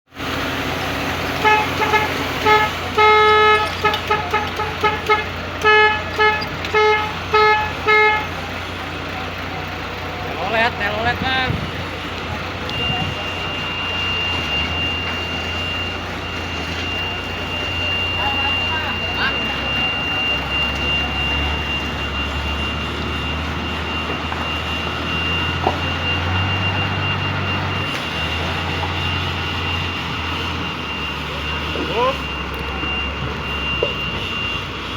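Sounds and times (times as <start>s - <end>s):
heavy vehicle engine rumbling: 0.1s - 34.9s
high-pitched tone: 0.3s - 34.9s
bus horn toots: 1.2s - 8.5s.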